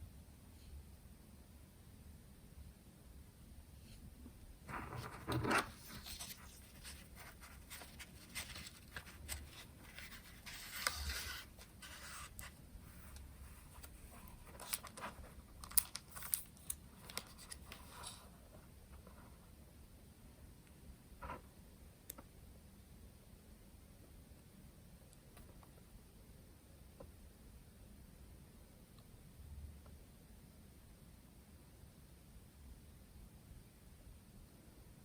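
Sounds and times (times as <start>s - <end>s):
scratchy rustling: 4.7s - 19.5s.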